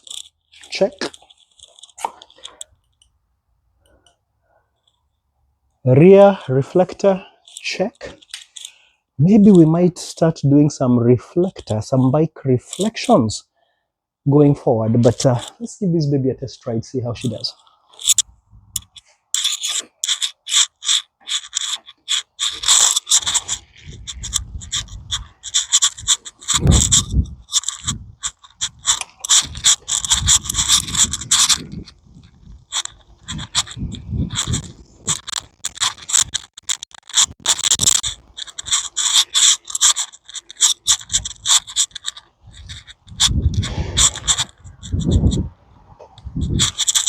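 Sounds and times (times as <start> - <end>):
scratchy scraping and rubbing: 0.0 - 2.8, 5.9 - 13.3, 14.3 - 47.0
bicycle freewheel ratcheting: 17.2 - 45.4, 46.3 - 47.0.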